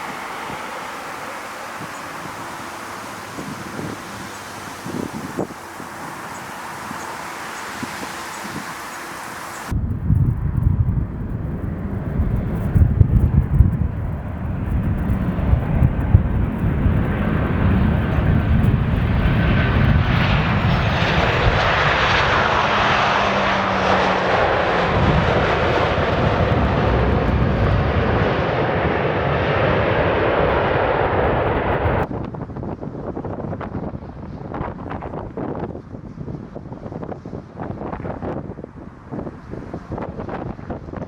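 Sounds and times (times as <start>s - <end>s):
jet engines rushing: 0.0s - 32.1s
wind buffeting microphone: 0.0s - 41.0s.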